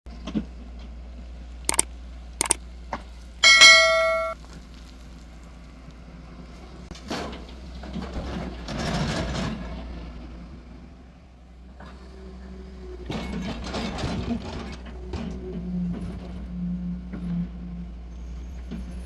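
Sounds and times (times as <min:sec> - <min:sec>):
excavator engine running: 0:01.4 - 0:04.6
loud metallic clang: 0:03.4 - 0:04.4
sharp metal knocks: 0:03.4 - 0:04.4.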